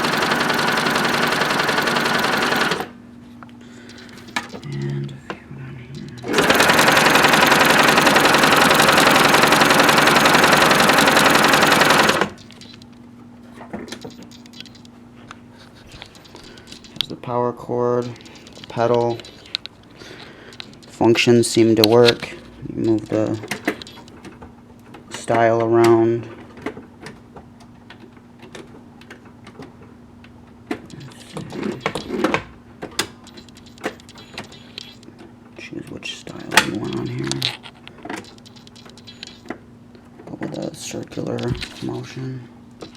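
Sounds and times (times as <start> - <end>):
sewing machine running fast: 0.0 - 3.0, 6.2 - 12.4
faint steady hum: 1.7 - 8.3.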